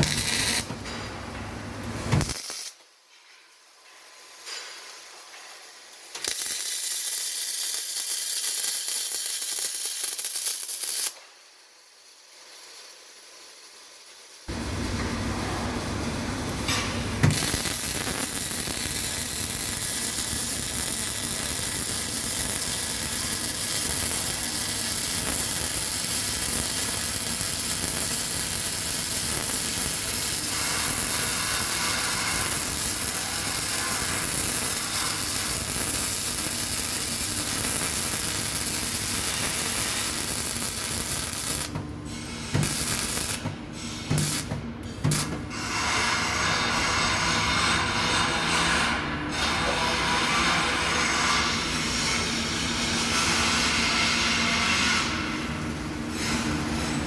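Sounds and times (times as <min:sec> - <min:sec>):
welding arc crackling and sizzling: 0:00.0 - 0:03.0, 0:03.6 - 0:57.0.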